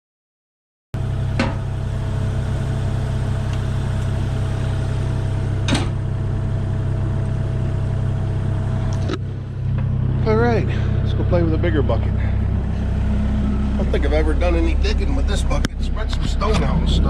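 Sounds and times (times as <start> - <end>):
excavator engine running: 1.0 - 17.0
thin high whine: 12.6 - 17.0.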